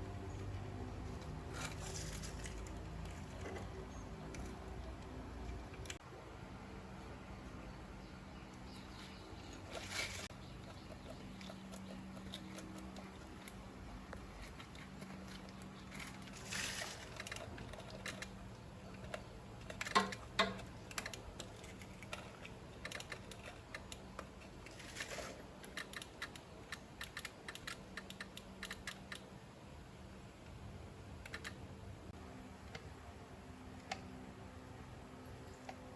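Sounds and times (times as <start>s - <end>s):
clicks and taps on metal parts: 19.7s - 21.5s.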